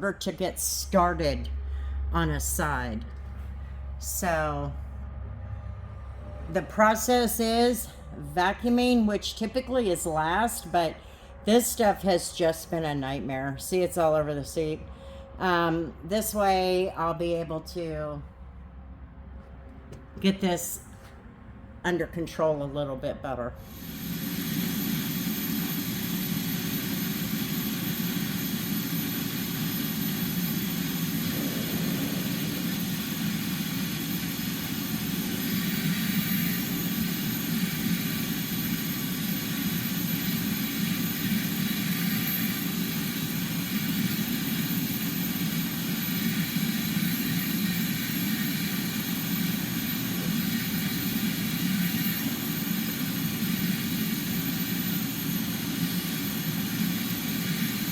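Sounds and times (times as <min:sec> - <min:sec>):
vacuum cleaner running: 0:23.6 - 0:57.9.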